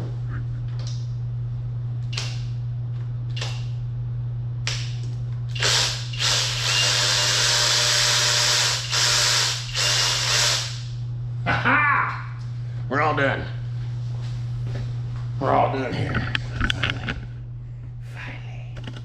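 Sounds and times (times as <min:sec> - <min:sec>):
steady low hum: 0:00.0 - 0:19.0
cordless power tool spinning: 0:05.6 - 0:10.9.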